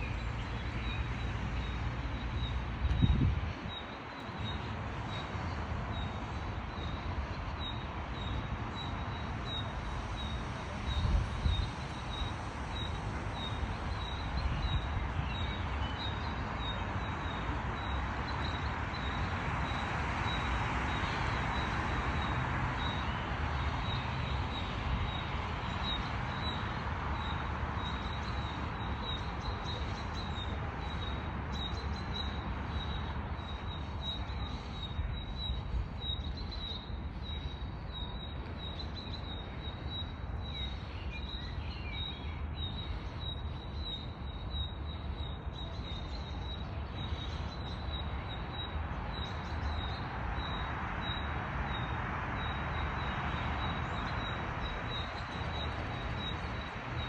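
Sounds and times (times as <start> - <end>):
traffic hum: 0.0 - 57.0.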